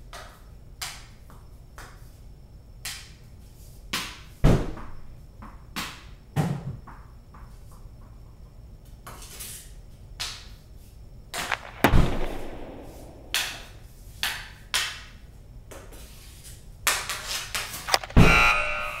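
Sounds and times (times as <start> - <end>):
hockey stick hitting puck: 11.4 - 14.9.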